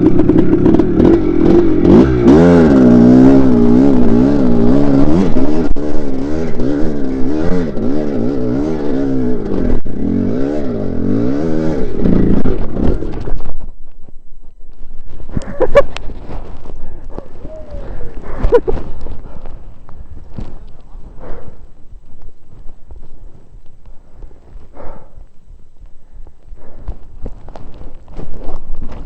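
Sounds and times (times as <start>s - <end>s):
dirt bike engine revving: 0.0s - 13.4s, 15.5s - 21.8s.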